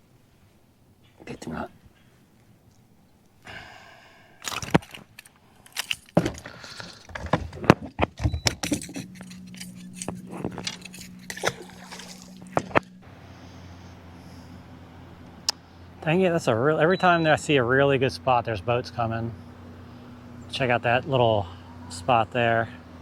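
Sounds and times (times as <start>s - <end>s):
fish knocking and splashing: 4.4s - 5.1s, 10.2s - 12.9s
electric trolling motor hum: 8.1s - 23.0s.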